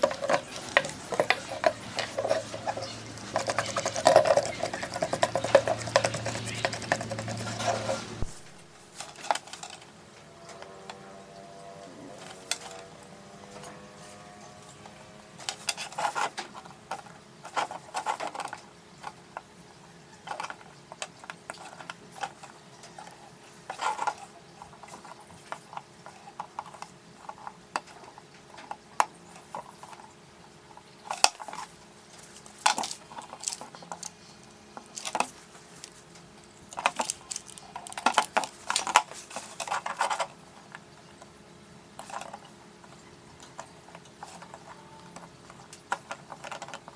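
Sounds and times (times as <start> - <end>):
metal parts and tools clinking: 0.0 - 9.9, 12.1 - 12.9, 36.7 - 40.3
faint steady hum: 0.0 - 46.9.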